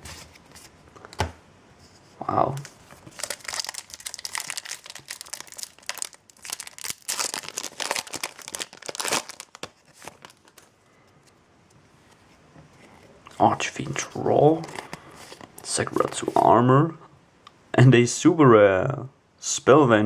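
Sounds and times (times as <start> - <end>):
foil wrapper crinkling and tearing: 2.4 - 10.7.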